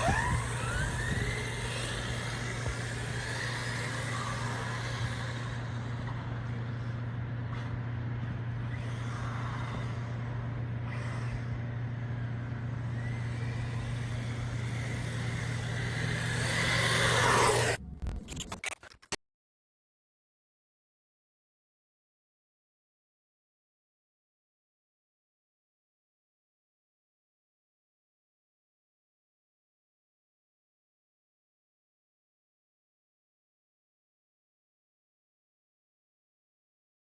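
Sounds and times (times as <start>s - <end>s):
rc truck motor whine: 0.0s - 19.2s.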